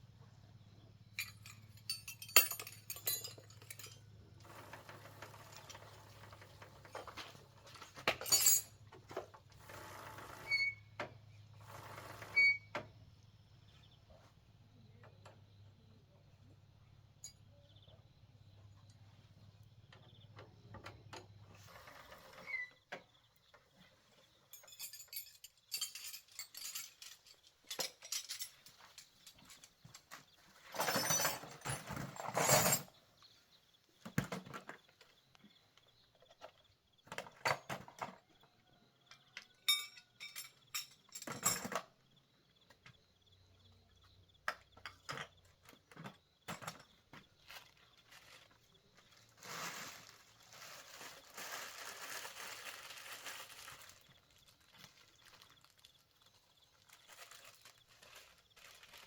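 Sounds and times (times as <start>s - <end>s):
clinks and knocks of handling: 1.1s - 9.4s, 22.9s - 33.0s, 36.2s - 42.0s, 44.4s - 48.6s
scraping and rustling: 46.6s - 59.0s.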